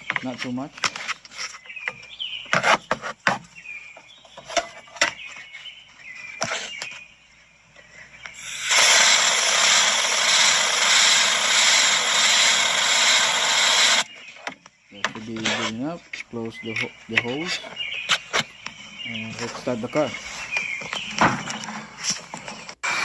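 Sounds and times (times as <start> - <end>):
aerosol can spraying hiss: 8.4 - 14.0.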